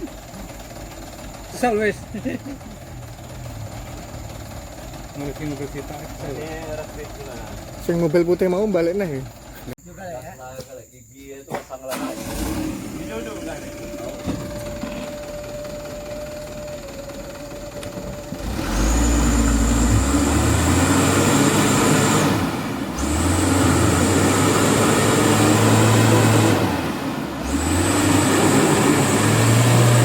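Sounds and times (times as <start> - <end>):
diesel truck engine revving: 0.0 - 9.8, 11.9 - 30.0.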